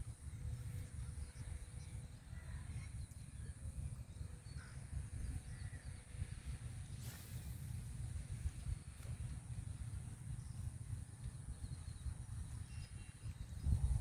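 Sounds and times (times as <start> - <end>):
faint bird calls: 0.1 - 7.8.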